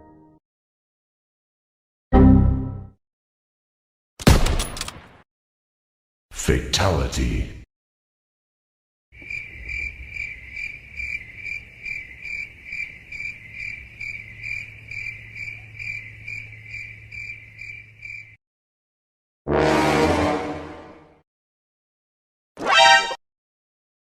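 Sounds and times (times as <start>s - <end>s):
cricket chirping: 9.2s - 18.4s.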